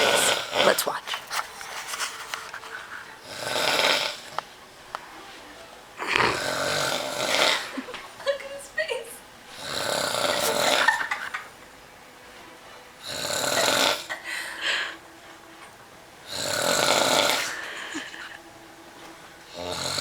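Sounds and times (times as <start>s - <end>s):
man snoring loudly: 0.0s - 0.8s, 3.2s - 4.4s, 6.0s - 7.9s, 9.6s - 11.1s, 13.0s - 14.3s, 16.2s - 18.2s, 19.5s - 20.0s.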